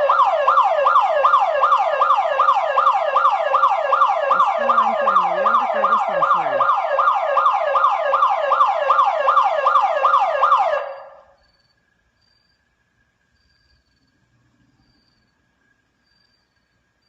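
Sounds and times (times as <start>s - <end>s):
electronic alarm siren whooping: 0.0s - 11.2s.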